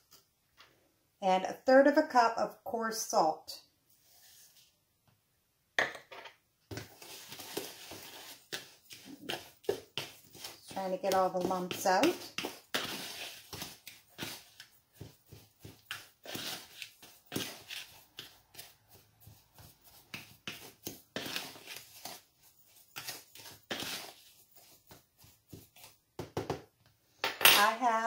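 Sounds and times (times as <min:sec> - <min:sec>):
utensil scraping dry powder in bowl: 0:07.0 - 0:26.0.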